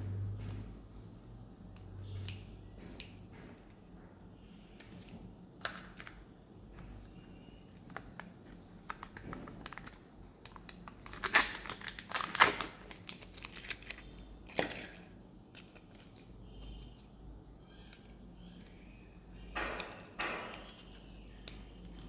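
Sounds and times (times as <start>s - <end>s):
foil wrapper crinkling and tearing: 8.9s - 15.0s.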